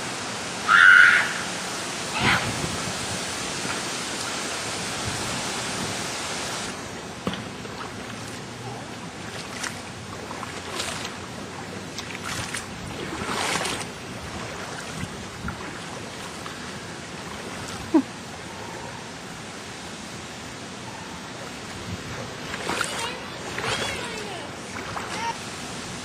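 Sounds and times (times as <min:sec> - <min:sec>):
rain: 0:00.0 - 0:26.0
wind: 0:00.0 - 0:26.0.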